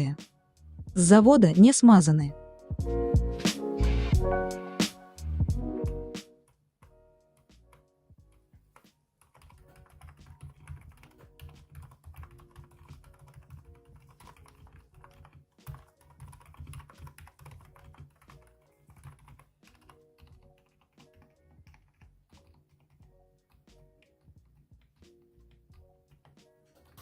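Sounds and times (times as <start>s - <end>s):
background music: 0.0s - 27.0s
mechanical keyboard typing: 7.4s - 27.0s.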